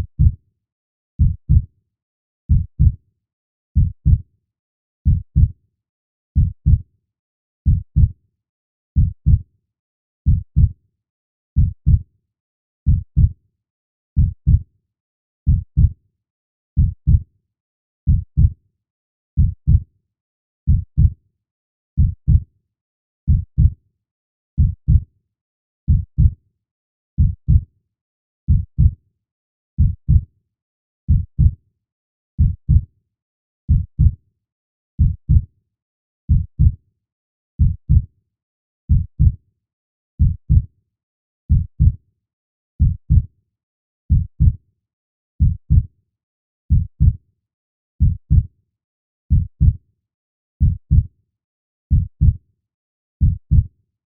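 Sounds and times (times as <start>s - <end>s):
slow heartbeat: 0.0s - 0.3s, 2.5s - 2.9s, 7.7s - 8.1s, 12.9s - 13.3s, 16.8s - 17.2s, 19.4s - 19.8s, 24.6s - 25.0s, 25.9s - 26.4s, 28.5s - 28.9s, 29.8s - 30.2s, 32.4s - 32.8s, 33.7s - 34.2s, 35.0s - 35.4s, 36.3s - 36.8s, 37.6s - 38.0s, 38.9s - 39.4s, 40.2s - 40.7s, 41.5s - 42.0s, 42.8s - 43.3s, 44.1s - 44.6s, 45.4s - 45.8s, 46.7s - 47.2s, 48.0s - 48.5s, 49.3s - 49.8s, 50.6s - 51.1s, 51.9s - 52.4s, 53.2s - 53.6s.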